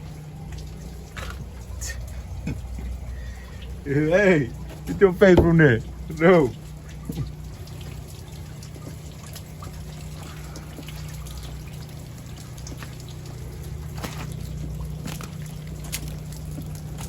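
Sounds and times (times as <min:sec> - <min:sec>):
sharp drip-like ticks: 0:00.0 - 0:17.0
steady low hum: 0:00.0 - 0:17.0
water trickling and dripping: 0:00.0 - 0:17.0.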